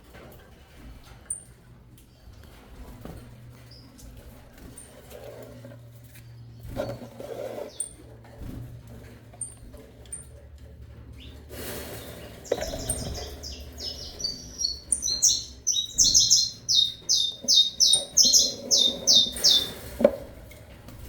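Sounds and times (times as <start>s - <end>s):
finches giving high chirps: 7.6s - 8.0s, 11.2s - 19.9s.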